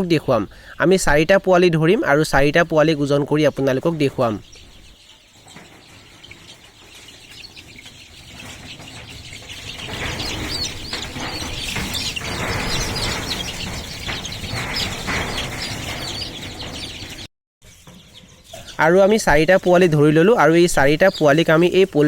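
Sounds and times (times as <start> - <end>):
chicks cheeping: 0.0 - 22.0
scuffling and wing flapping: 4.0 - 18.1.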